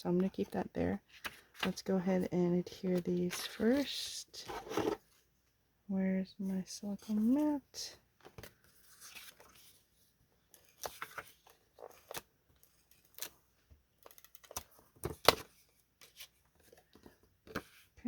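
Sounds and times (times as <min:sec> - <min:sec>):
paper rustling: 0:08.2 - 0:09.9.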